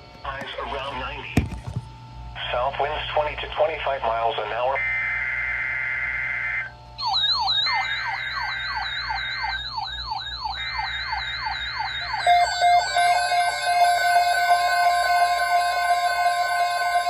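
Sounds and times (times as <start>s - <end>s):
buzzy data-burst tones: 2.3s - 17.0s
fast-warbling electronic siren: 4.7s - 17.0s
steady alert tones: 7.0s - 17.0s.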